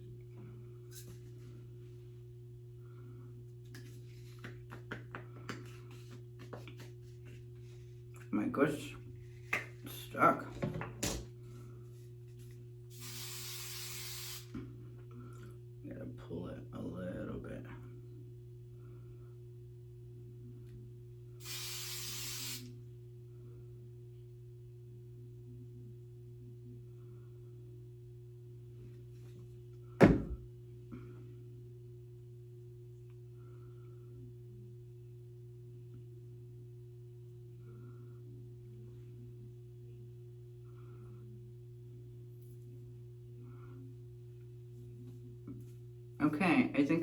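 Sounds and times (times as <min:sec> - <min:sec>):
steady low hum: 0:00.0 - 0:47.0
aerosol hairspray spray: 0:12.9 - 0:14.6, 0:21.4 - 0:22.7.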